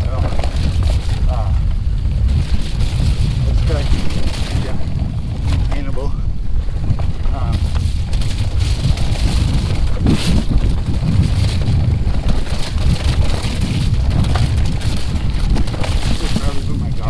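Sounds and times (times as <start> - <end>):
bike knocking over bumps: 0.0 - 17.0
bike tyres rumbling on snowy trail: 0.0 - 17.0
wind buffeting microphone: 0.0 - 17.0.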